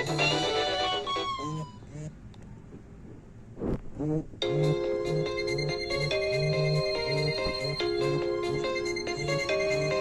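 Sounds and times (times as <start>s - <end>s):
mobile phone ringtone melody: 4.4s - 10.0s.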